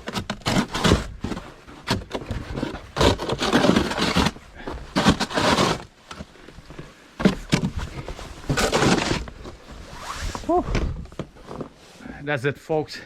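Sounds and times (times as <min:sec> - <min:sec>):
snow shovel scraping snow: 0:02.5 - 0:05.9, 0:08.4 - 0:10.6.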